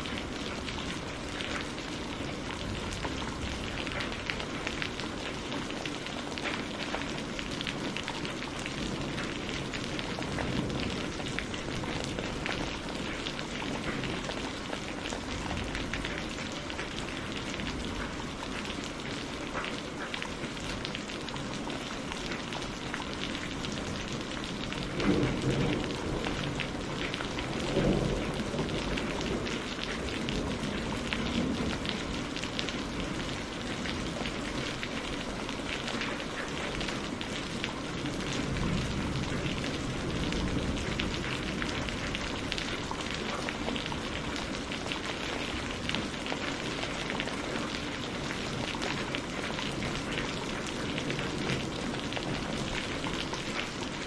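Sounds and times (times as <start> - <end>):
heavy rain: 0.0 - 54.0
thunder rumbling: 8.4 - 16.2, 23.8 - 32.4, 38.1 - 44.6.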